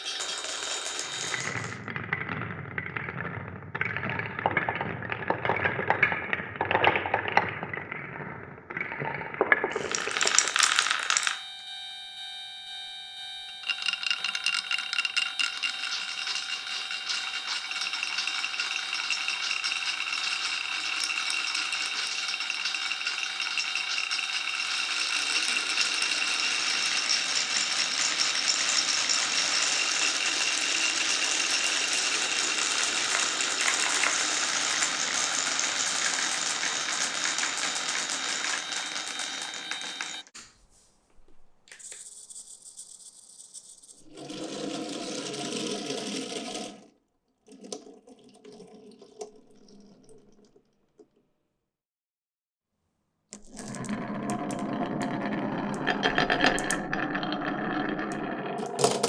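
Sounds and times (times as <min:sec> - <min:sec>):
glass marbles rattling down wooden run: 0:00.0 - 0:01.9, 0:03.8 - 0:11.4, 0:13.6 - 0:40.2, 0:53.4 - 0:59.0.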